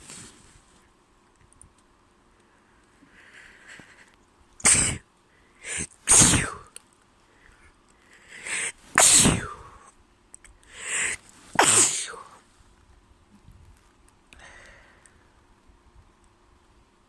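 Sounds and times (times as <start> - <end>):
person sneezing: 4.6 - 5.0, 5.6 - 6.7, 8.4 - 9.9, 10.8 - 12.4
quick in-breath: 4.7 - 9.9, 10.6 - 12.4, 14.4 - 15.3.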